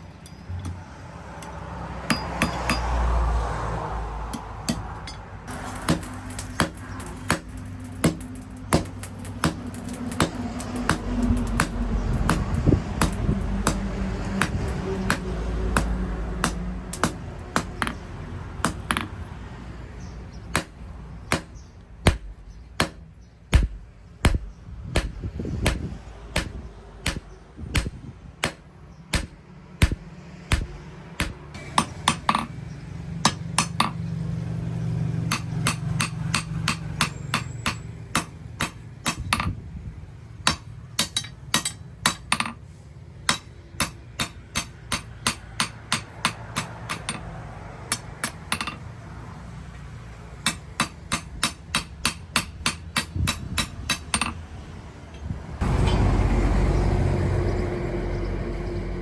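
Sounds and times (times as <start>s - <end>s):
hammer striking steel on anvil: 1.4s - 3.0s, 4.3s - 19.2s, 20.5s - 34.0s, 35.3s - 39.6s, 40.4s - 42.6s, 43.2s - 47.3s, 47.9s - 48.9s, 50.4s - 54.4s.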